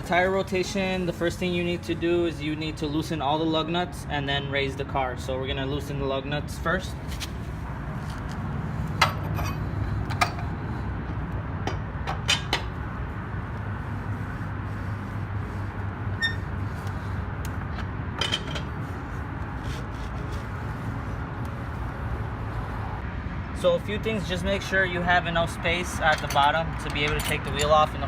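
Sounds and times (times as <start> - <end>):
lug wrench clinking on lug nuts: 9.0 - 10.5, 25.9 - 28.0.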